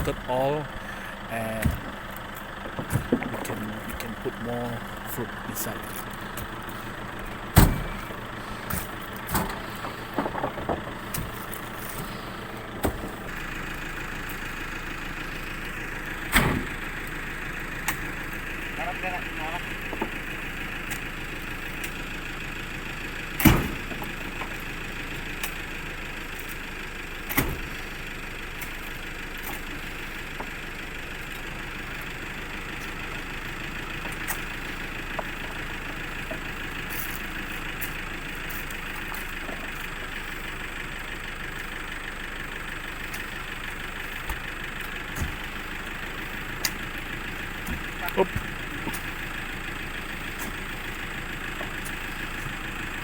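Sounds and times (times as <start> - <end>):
vehicle engine idling: 0.0 - 53.0
heavy thuds: 2.6 - 4.1, 6.4 - 13.3.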